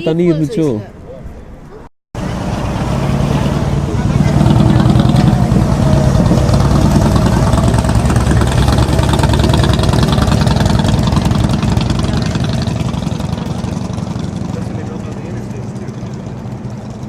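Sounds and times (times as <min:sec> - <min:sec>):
wind buffeting microphone: 0:02.3 - 0:14.5.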